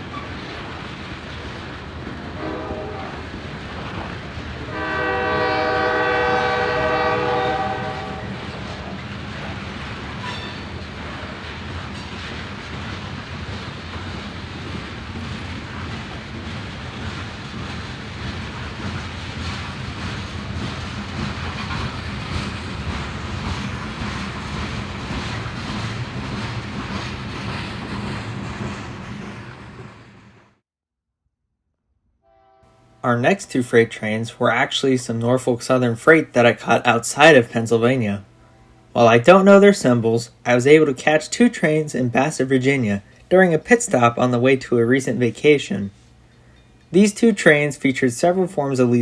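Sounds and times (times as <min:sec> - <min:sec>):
wheels clicking over rail joints: 0:00.0 - 0:30.5
freight train rumbling past: 0:00.0 - 0:30.6, 0:32.6 - 0:49.0
train horn long chord: 0:02.4 - 0:03.2, 0:04.7 - 0:09.0, 0:32.2 - 0:33.1.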